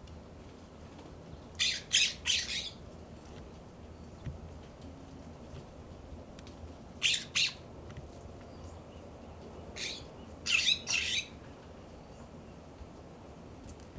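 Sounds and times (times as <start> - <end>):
jays giving harsh raspy calls: 1.6 - 2.7, 7.0 - 7.6.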